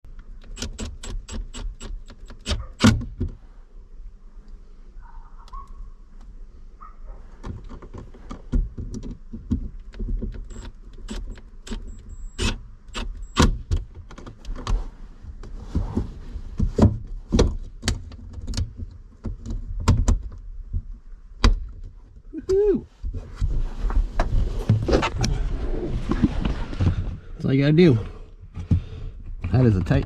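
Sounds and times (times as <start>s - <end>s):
steady low rumble: 23.5s - 28.5s.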